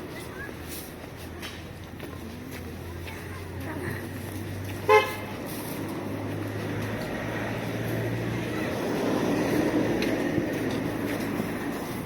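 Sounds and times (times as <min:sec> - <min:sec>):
street noise: 0:00.0 - 0:12.0
motor vehicle passing: 0:01.9 - 0:12.0.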